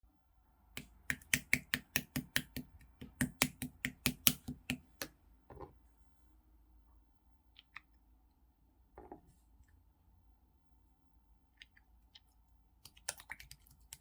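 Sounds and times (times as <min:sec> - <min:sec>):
slime squish: 0:11.6 - 0:14.0.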